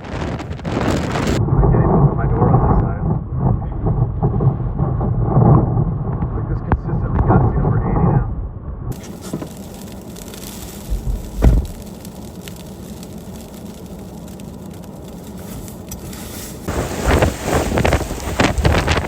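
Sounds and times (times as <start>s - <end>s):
wind gusts buffeting microphone: 0.0s - 9.6s, 16.6s - 19.0s
blizzard wind rushing: 0.0s - 19.0s
thumps: 10.4s - 11.9s.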